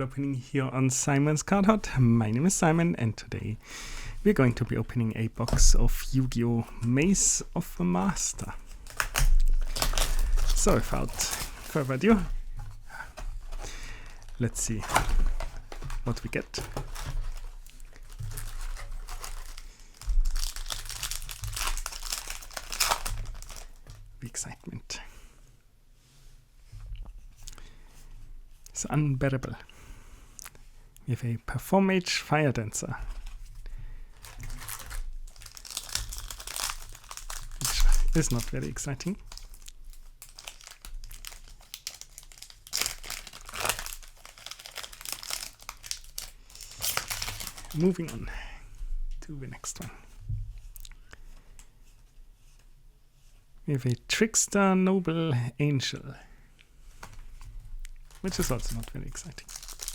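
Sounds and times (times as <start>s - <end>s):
packaging crinkling and tearing: 5.2s - 24.0s, 33.1s - 48.2s, 57.0s - 59.9s.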